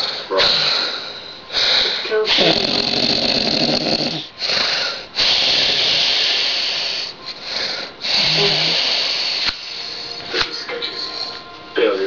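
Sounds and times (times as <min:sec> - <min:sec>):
woman snoring loudly: 0:02.3 - 0:04.6, 0:05.2 - 0:07.1, 0:08.1 - 0:09.5.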